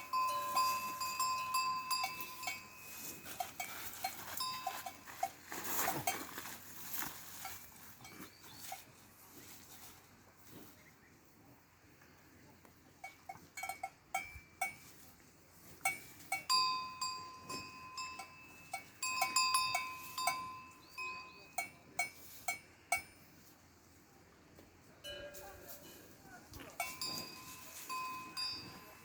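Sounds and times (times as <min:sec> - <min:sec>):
cowbells clanking: 0:00.0 - 0:09.5, 0:12.9 - 0:23.4, 0:25.0 - 0:29.0.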